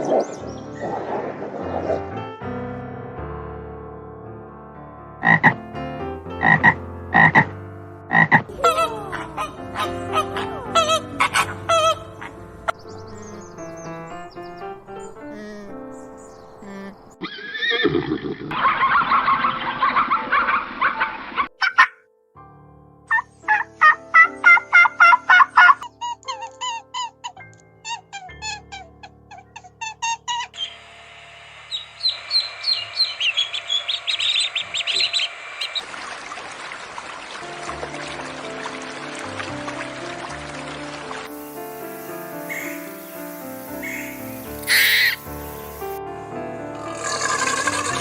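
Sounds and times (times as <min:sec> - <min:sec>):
background music with held notes: 0:00.0 - 0:17.3, 0:21.5 - 0:30.6, 0:37.3 - 0:48.0
chirping calls with sliding pitch: 0:08.5 - 0:17.7, 0:27.9 - 0:36.8, 0:41.1 - 0:46.0
steady background tones: 0:30.6 - 0:39.3, 0:39.9 - 0:46.6
animal short calls: 0:43.8 - 0:45.3.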